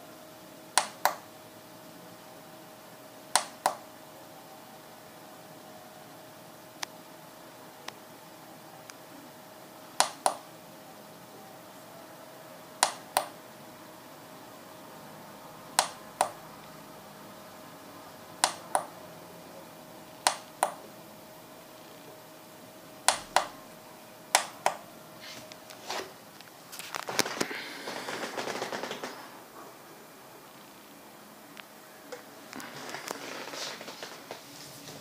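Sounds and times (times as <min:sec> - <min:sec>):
faint steady hum: 0:00.0 - 0:35.0
switch clicks: 0:00.8 - 0:01.2, 0:03.4 - 0:03.8, 0:18.4 - 0:18.9, 0:20.2 - 0:20.8, 0:23.1 - 0:23.5, 0:24.3 - 0:24.8.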